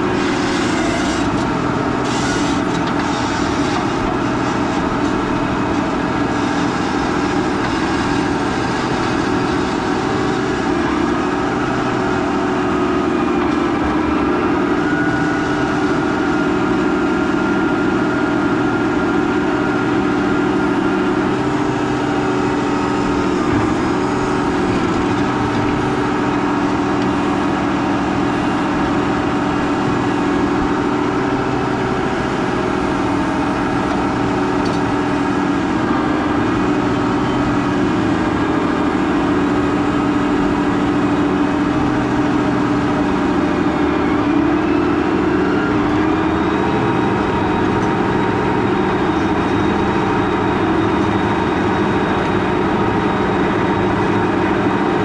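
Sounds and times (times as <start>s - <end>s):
tractor diesel engine running: 0.0s - 55.0s.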